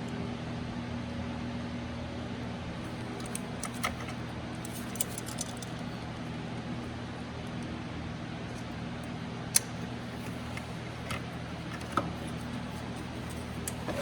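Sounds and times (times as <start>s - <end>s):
low mechanical hum: 0.0s - 14.0s
metallic clicks and clinks: 3.2s - 5.8s.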